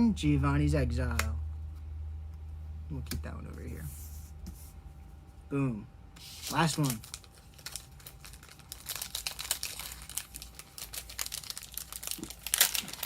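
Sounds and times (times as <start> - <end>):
foil wrapper crinkling: 6.2 - 13.0.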